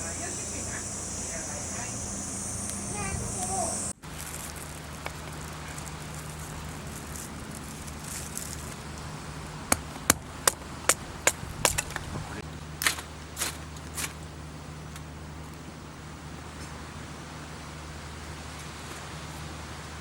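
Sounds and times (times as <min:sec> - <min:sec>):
campfire crackling: 0:00.0 - 0:15.6
steady low hum: 0:00.0 - 0:18.5.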